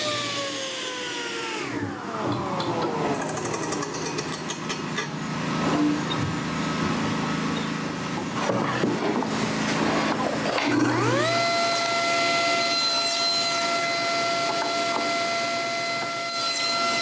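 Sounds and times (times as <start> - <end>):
table saw cutting wood: 0.0 - 4.4, 8.4 - 17.0
woodshop machinery humming: 0.0 - 17.0.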